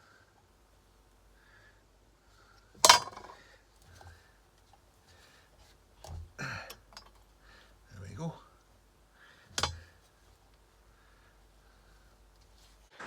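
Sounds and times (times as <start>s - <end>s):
small tool clicks and knocks: 9.5s - 9.9s.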